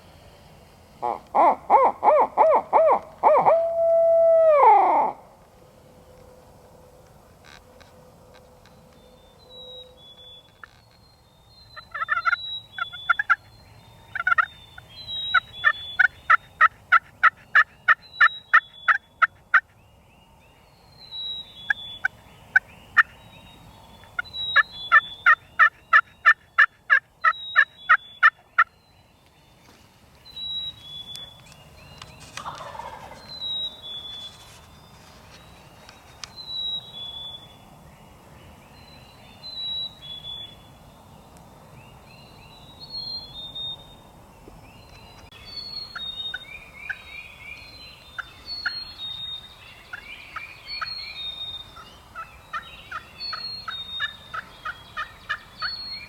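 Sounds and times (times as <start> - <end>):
wild turkey yelping: 1.0 - 5.2, 11.9 - 13.4, 32.4 - 33.2, 53.6 - 55.5.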